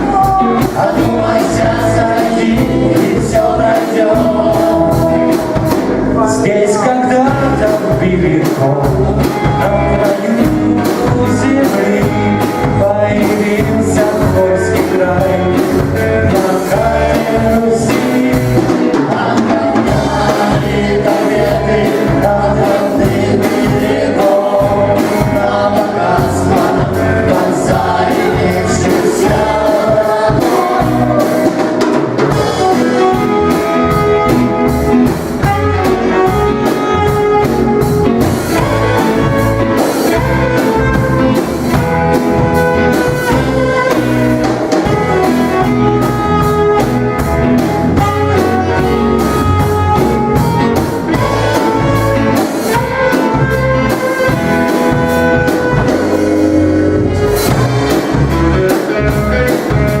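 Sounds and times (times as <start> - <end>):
drum kit beat: 0.0 - 60.0
rock band playing instrumental: 0.0 - 60.0.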